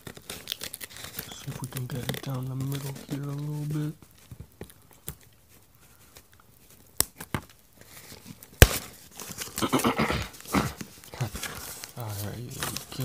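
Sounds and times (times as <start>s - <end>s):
package tearing open: 0.0s - 4.0s, 6.1s - 13.0s
tearing and crinkling: 0.0s - 13.0s
sharp snaps: 6.4s - 7.3s
loud pop: 8.6s - 8.9s.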